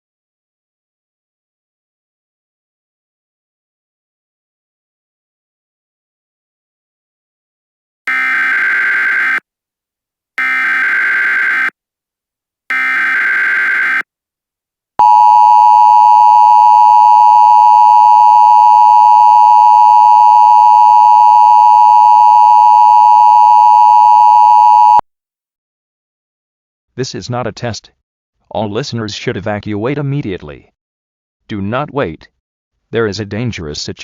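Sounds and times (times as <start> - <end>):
two-tone attention signal: 15.0 - 25.0.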